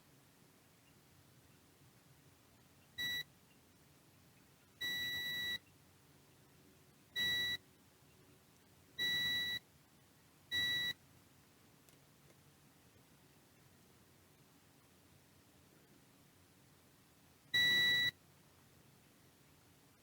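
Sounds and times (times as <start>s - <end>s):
multimeter continuity beeps: 3.0s - 3.3s, 4.8s - 5.6s, 7.2s - 7.6s, 9.0s - 9.6s, 10.5s - 11.0s, 17.6s - 18.2s.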